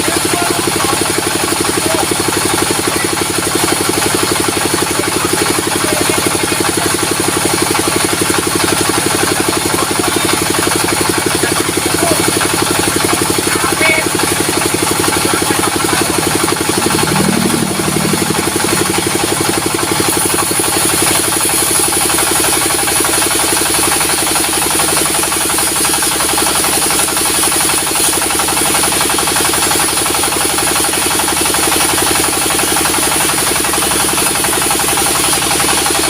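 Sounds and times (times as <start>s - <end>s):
diesel engine running: 0.0s - 36.0s.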